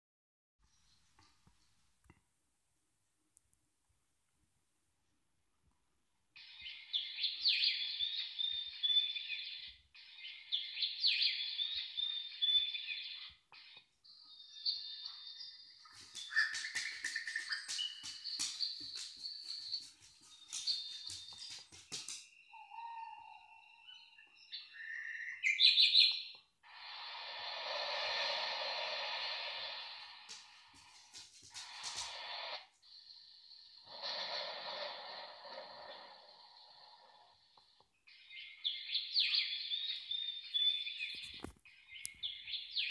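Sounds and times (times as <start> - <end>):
birdsong alarm tone: 6.4 - 26.4, 31.7 - 34.1, 35.6 - 42.9.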